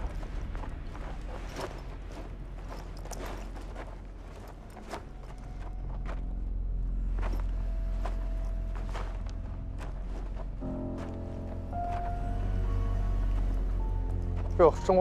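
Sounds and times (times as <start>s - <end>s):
low steady hum: 0.0s - 14.9s
background music: 0.0s - 15.0s
footsteps walking: 0.0s - 15.0s.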